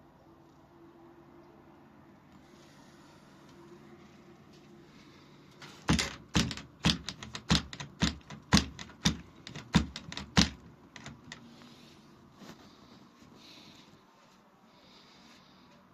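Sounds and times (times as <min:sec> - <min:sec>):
sharp clicks and knocks: 0:05.6 - 0:11.5.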